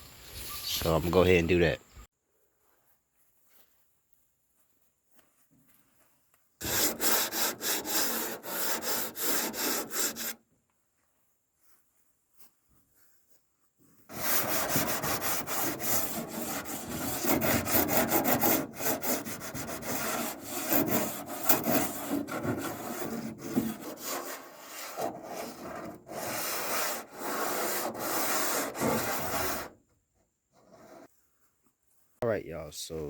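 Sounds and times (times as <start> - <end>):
sandpaper scraping on steel: 6.6 - 10.4, 14.1 - 29.8.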